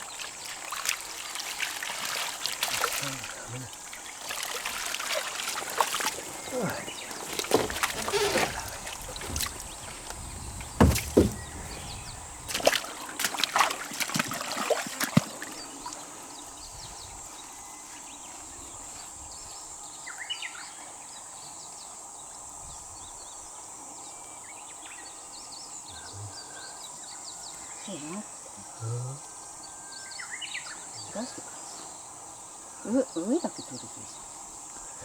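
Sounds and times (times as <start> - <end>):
water splashing in a pond: 0.0 - 16.4
high insect drone: 0.0 - 35.0
faint chirps: 5.8 - 13.1.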